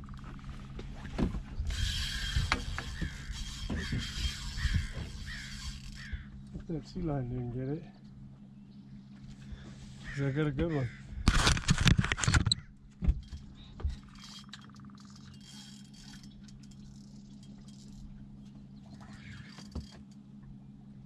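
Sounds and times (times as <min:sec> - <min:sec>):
boat motor humming: 0:00.0 - 0:21.0
fishing reel clicking and rattling: 0:01.7 - 0:06.2, 0:13.2 - 0:18.2, 0:18.8 - 0:20.2.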